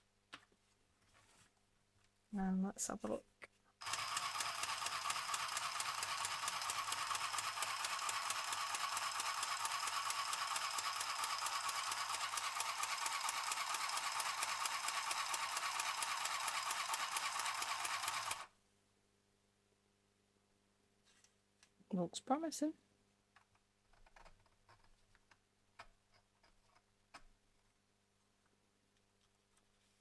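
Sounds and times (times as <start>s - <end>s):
sewing machine stitching paper: 3.8s - 18.5s.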